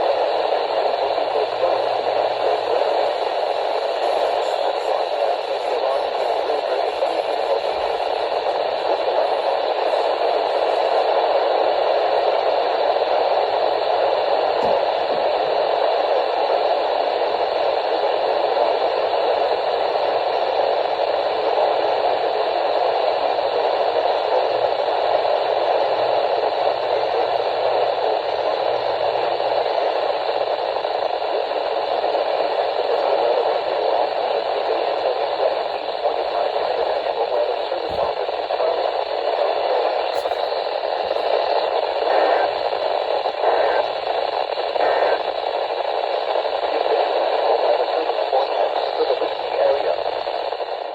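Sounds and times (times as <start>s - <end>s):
radio static hiss: 0.0s - 50.9s.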